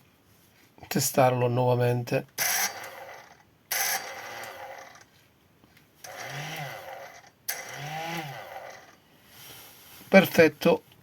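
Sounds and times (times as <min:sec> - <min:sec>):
hand blender motor whirring: 0:06.1 - 0:09.0.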